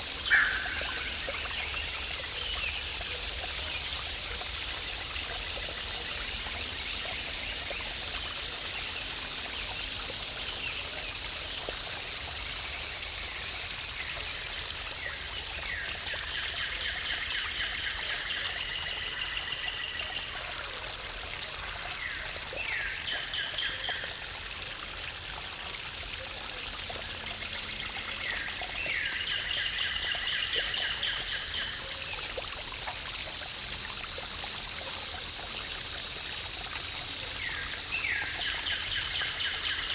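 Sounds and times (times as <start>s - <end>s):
songbird trilling: 0.3s - 1.1s.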